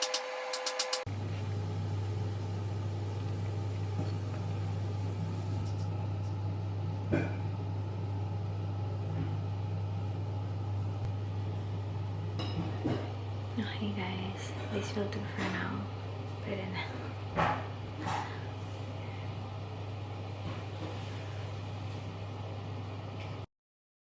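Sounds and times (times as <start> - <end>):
high tone with rapid clicking: 0.0 - 1.1
low mechanical hum: 0.0 - 23.5.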